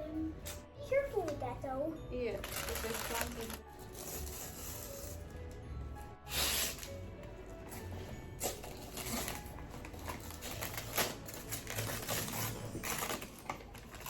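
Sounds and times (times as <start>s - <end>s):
packaging rustling and clicking: 2.4s - 4.9s, 7.8s - 14.0s.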